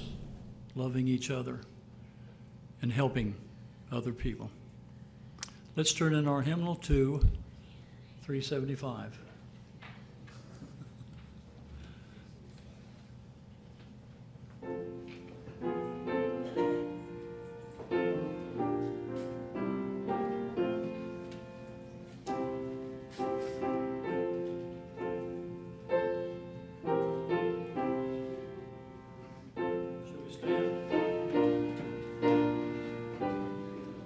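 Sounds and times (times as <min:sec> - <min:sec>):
piano playing hymn chords: 0:14.6 - 0:34.0.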